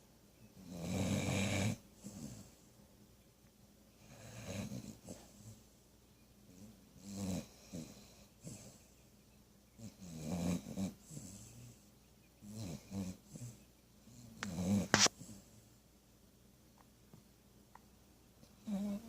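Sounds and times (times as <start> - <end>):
snoring breaths: 4.0 - 5.6, 9.8 - 11.8.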